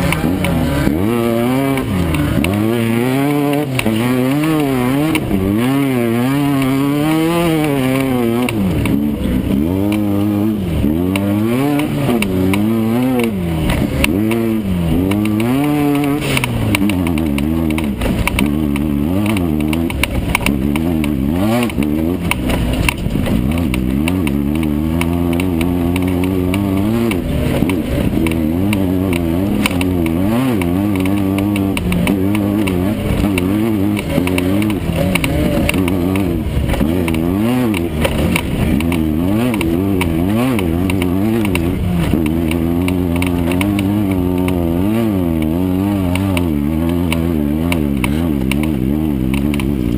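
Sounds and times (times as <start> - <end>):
race car engine revving: 0.0 - 49.9.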